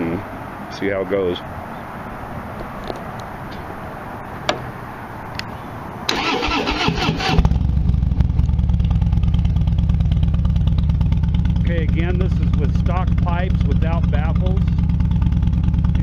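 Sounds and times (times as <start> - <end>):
motorcycle starter cranking: 6.1 - 7.6
motorcycle engine idling loudly: 7.3 - 16.0.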